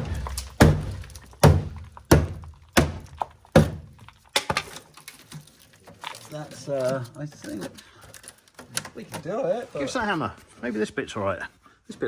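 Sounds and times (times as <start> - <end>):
heavy thunks on car body panels: 0.0 - 3.9.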